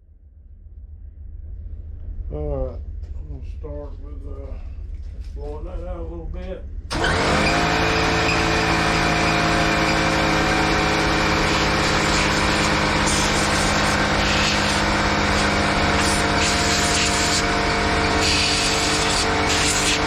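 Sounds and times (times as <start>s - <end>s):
blower air rush: 6.9s - 20.0s.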